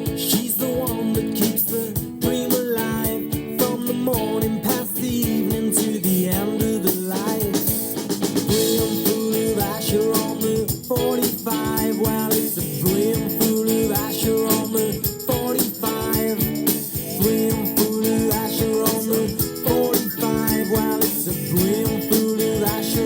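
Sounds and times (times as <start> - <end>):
jingling bells: 8.6 - 23.0
background music with steady beat: 12.9 - 23.0.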